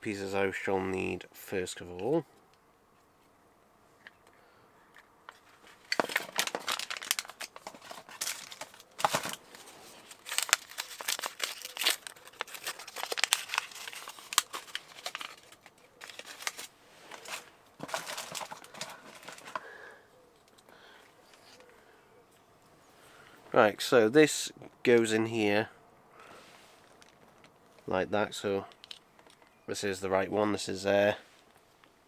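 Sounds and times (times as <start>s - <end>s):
packaging crinkling and tearing: 5.3s - 19.8s.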